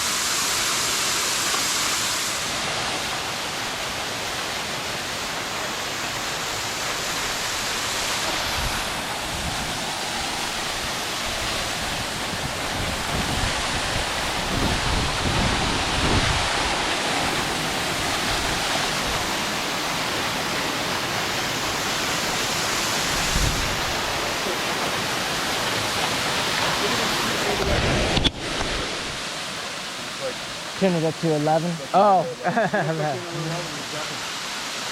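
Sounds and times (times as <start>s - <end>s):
waterfall roar: 0.0s - 34.9s
wind rumble on microphone: 11.6s - 16.8s, 23.1s - 24.2s.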